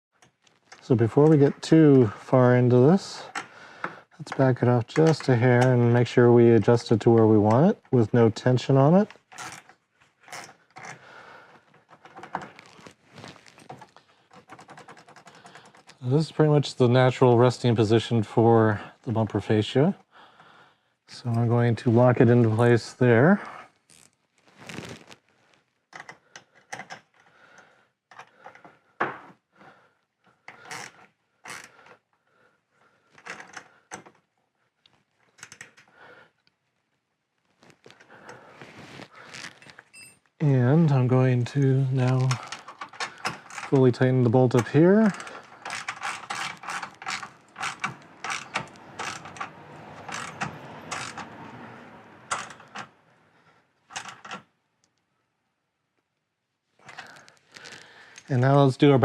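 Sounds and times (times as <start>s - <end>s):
brief rustling: 23.8s - 25.7s, 56.8s - 58.5s
wrench and hardware clicking: 42.1s - 51.5s, 52.3s - 52.9s.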